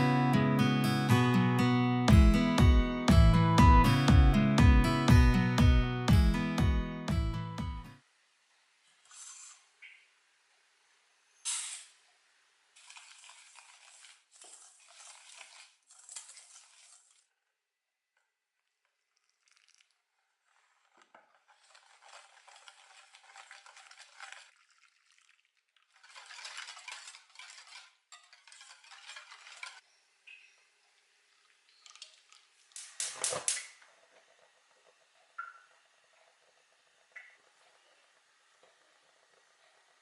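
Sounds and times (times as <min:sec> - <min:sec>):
utensil scraping a bowl: 0:09.0 - 0:09.8, 0:12.8 - 0:17.2, 0:20.4 - 0:24.5, 0:25.9 - 0:30.0.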